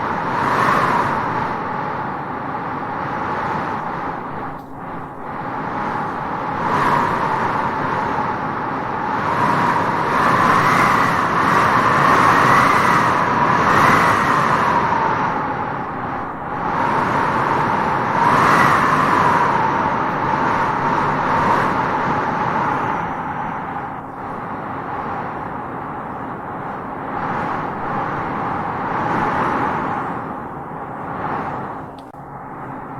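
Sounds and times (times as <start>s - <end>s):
wind blowing through grass: 0.0s - 32.9s.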